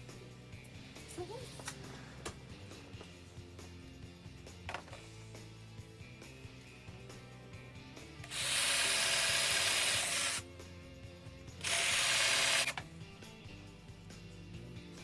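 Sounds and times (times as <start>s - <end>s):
power drill drilling into wood: 8.2s - 10.4s, 11.6s - 12.8s.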